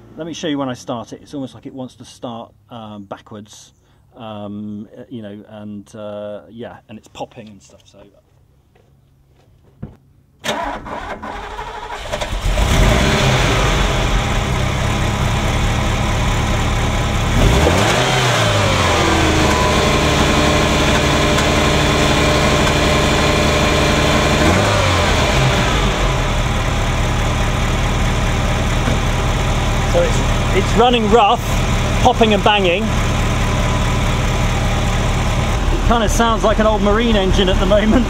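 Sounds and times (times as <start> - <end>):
car engine starting: 10.4 - 38.0
engine running rough and popping: 12.4 - 38.0.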